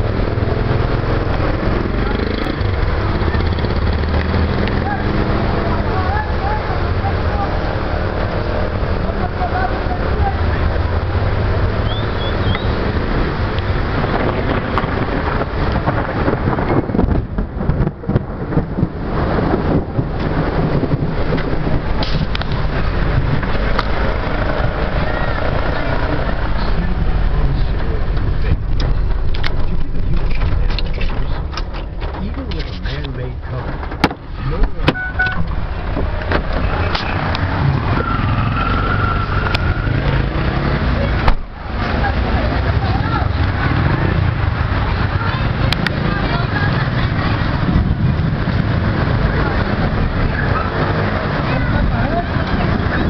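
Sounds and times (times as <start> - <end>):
vehicle engine rumble: 0.0 - 53.0
floodwater rushing: 17.5 - 30.7.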